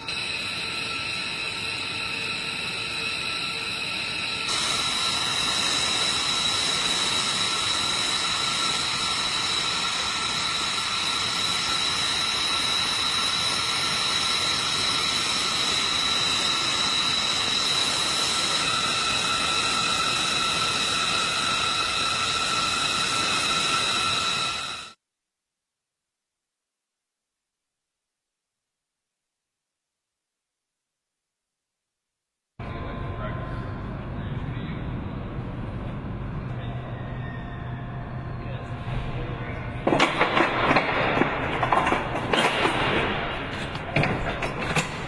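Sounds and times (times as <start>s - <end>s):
jet engine rush with turbine whine: 0.0s - 25.0s, 37.7s - 45.0s.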